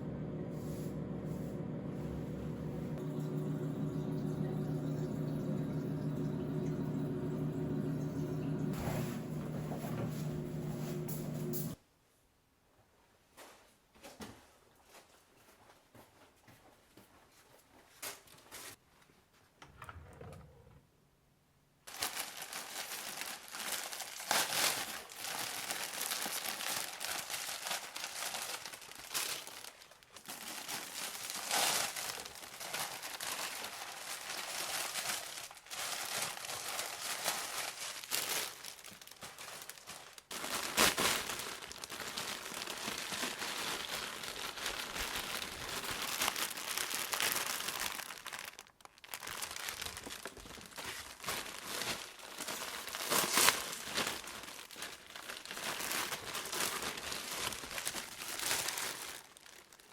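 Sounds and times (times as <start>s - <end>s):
food packaging crinkling: 21.9s - 59.9s.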